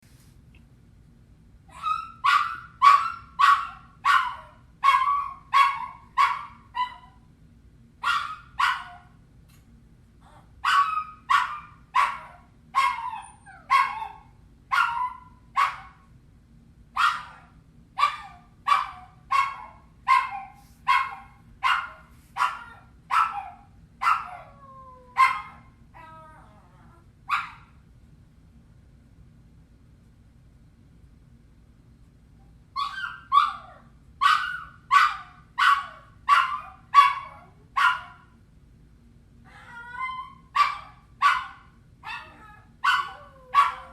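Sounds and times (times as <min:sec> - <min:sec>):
small dog yelping whines: 0:01.7 - 0:07.2, 0:10.3 - 0:15.9, 0:32.8 - 0:38.1, 0:39.5 - 0:43.9.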